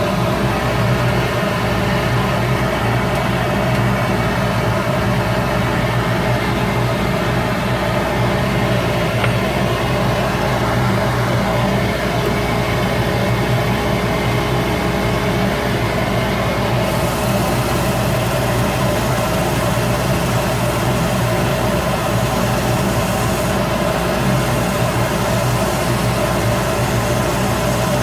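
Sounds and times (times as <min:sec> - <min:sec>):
high hiss: 0:16.8 - 0:28.0
wood lathe humming: 0:16.8 - 0:28.0.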